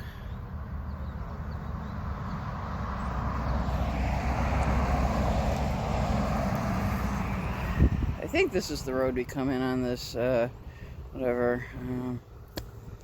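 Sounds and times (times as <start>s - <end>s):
motor vehicle engine passing: 0.6s - 8.8s.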